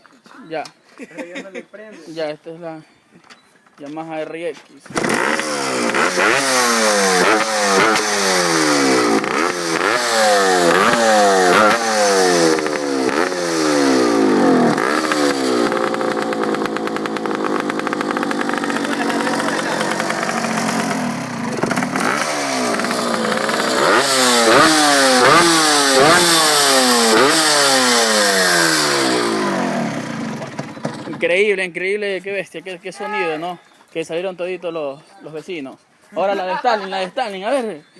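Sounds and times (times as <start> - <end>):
motorcycle engine revving: 4.9 - 31.2.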